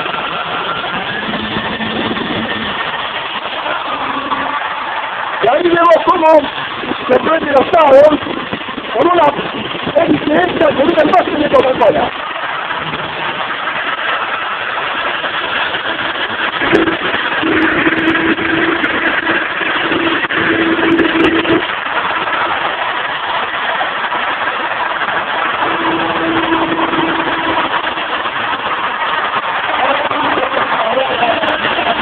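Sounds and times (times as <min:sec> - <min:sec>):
motor hum: 0:16.4 - 0:21.9, 0:25.2 - 0:28.7.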